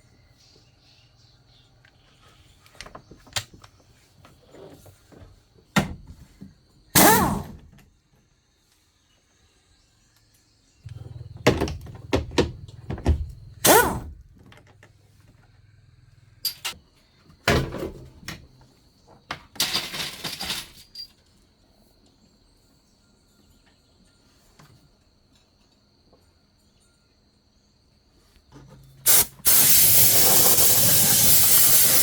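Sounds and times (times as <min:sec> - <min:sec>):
knocks and clatter of tools: 0:10.9 - 0:13.7, 0:16.4 - 0:21.4
short hiss: 0:29.1 - 0:32.0.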